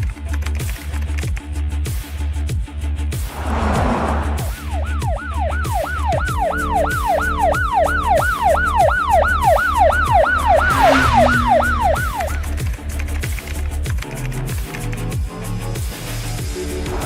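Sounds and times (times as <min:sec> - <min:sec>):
background music with pulsing bass: 0:00.0 - 0:17.0
whoosh: 0:03.2 - 0:05.2
ambulance siren yelping: 0:04.6 - 0:12.6.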